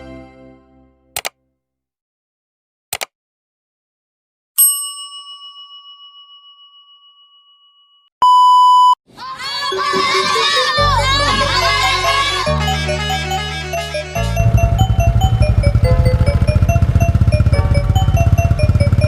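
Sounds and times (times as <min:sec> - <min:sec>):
music: 0:00.0 - 0:01.1, 0:09.7 - 0:19.0
quick double clicks: 0:01.2 - 0:01.4, 0:02.9 - 0:03.1
bell-like ding: 0:04.6 - 0:08.1
short electronic beep: 0:08.2 - 0:09.0.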